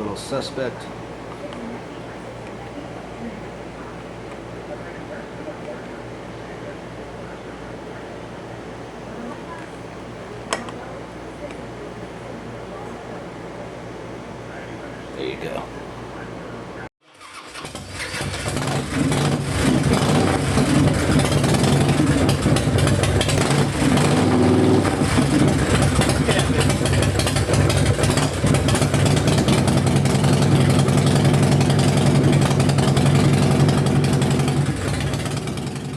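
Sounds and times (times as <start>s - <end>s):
motorcycle engine idling: 17.3s - 35.9s.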